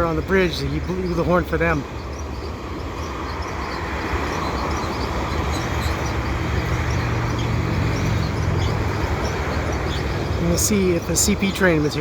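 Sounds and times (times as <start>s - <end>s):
diesel locomotive engine drone: 0.0s - 12.0s
freight train rumbling on rails: 0.0s - 12.0s.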